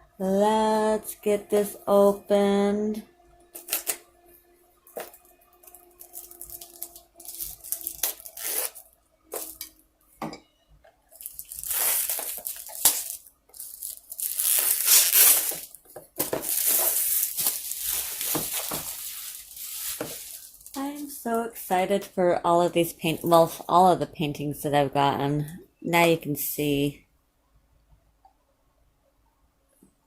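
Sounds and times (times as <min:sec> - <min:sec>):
packaging tearing and rustling: 0:03.5 - 0:04.0, 0:04.9 - 0:09.7, 0:11.1 - 0:20.8.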